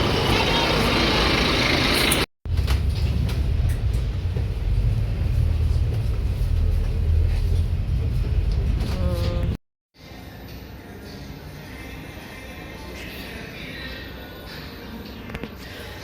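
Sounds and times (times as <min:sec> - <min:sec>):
bus engine and road rumble: 0:00.0 - 0:09.6.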